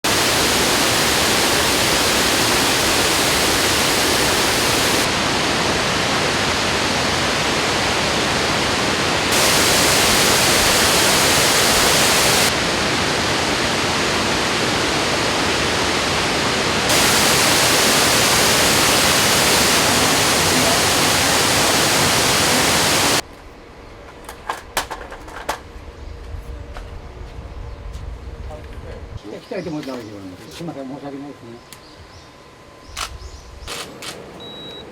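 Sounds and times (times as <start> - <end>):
waterfall roaring: 0.0 - 23.2.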